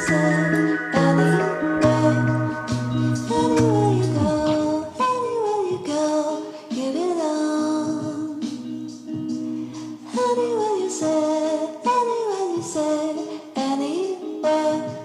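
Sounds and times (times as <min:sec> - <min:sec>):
sustained instrumental notes: 0:00.0 - 0:05.8
woman singing pop song: 0:00.0 - 0:15.0.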